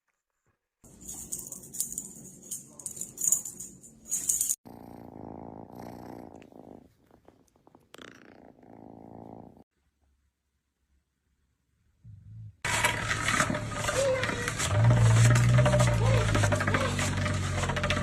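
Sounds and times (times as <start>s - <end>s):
cat purring: 4.6s - 9.6s.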